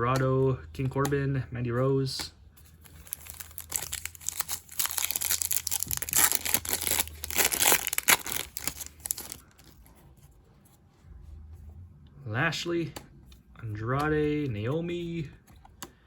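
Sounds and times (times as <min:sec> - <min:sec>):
wrapper tearing and crinkling: 0:02.8 - 0:09.8.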